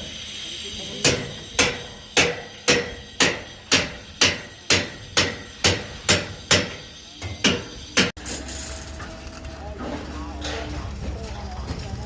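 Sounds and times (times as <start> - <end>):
hammer striking with ring: 1.0 - 8.2.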